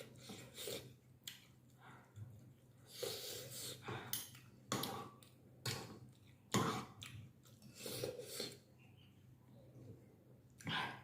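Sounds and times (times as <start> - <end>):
chewing: 4.1 - 8.6.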